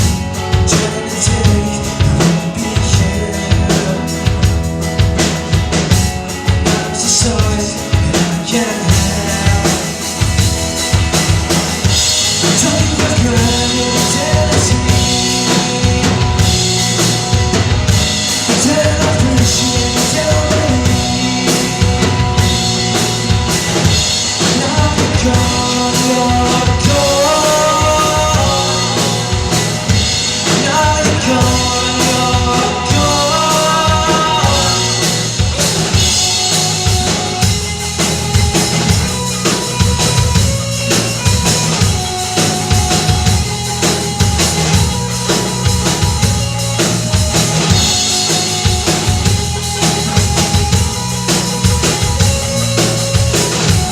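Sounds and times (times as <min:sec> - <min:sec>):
drum kit steady beat: 0:00.0 - 0:53.9
melodic line of held notes: 0:00.0 - 0:53.9
rock band playing: 0:00.0 - 0:53.9.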